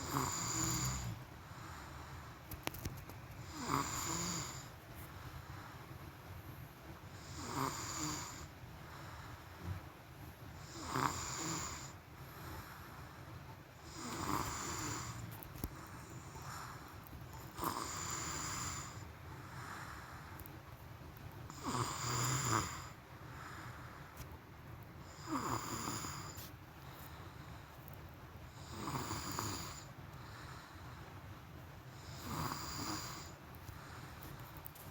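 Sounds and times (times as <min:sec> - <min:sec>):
person snoring: 0:03.5 - 0:04.6, 0:13.9 - 0:15.2, 0:21.5 - 0:23.0, 0:25.2 - 0:26.4, 0:32.0 - 0:33.3.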